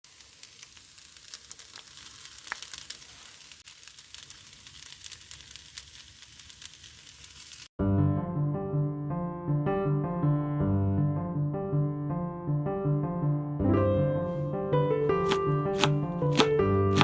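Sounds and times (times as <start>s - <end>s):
food sizzling in a frying pan: 0.0s - 7.7s
oil crackling: 0.0s - 7.7s, 15.1s - 17.0s
piano music: 7.8s - 17.0s.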